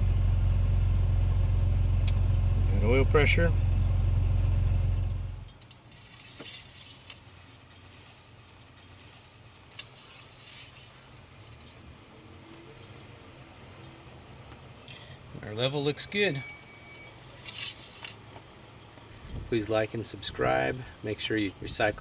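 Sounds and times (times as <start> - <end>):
car engine idling: 0.0 - 22.0
rustling handling noises: 5.5 - 12.6, 16.3 - 19.3.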